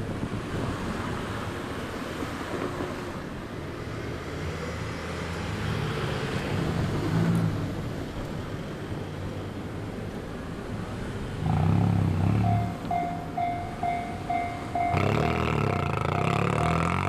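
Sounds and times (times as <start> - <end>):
road traffic rumble: 0.0 - 17.0
vehicle passing by: 3.8 - 8.1, 10.3 - 17.0.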